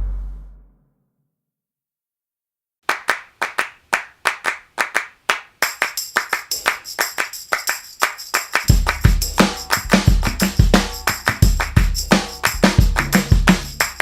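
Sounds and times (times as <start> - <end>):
bass drum: 0.0 - 0.7, 8.7 - 14.0
handclaps rhythm: 2.9 - 14.0
tambourine jingling: 5.6 - 14.0.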